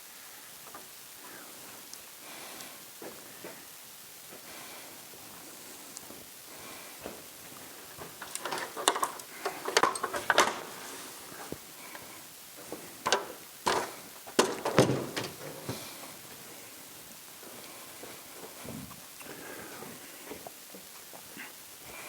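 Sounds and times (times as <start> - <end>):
hard objects knocking and clattering: 8.0 - 10.7, 13.0 - 15.9.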